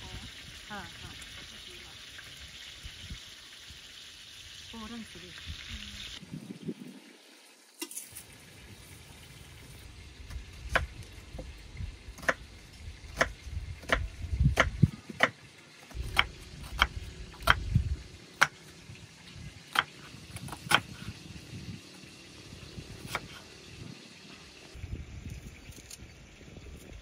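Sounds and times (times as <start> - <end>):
low rumble: 16.0 - 19.6.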